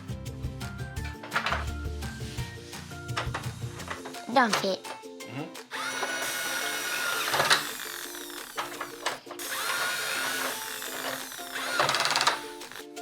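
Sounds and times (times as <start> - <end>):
background music: 0.0 - 13.0
toy electric drill whirring: 5.7 - 13.0.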